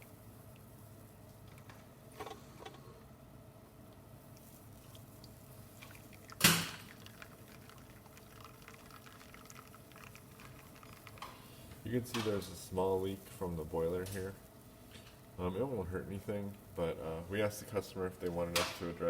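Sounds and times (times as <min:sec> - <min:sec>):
faint dripping: 0:04.3 - 0:12.3
espresso machine humming: 0:05.9 - 0:11.5.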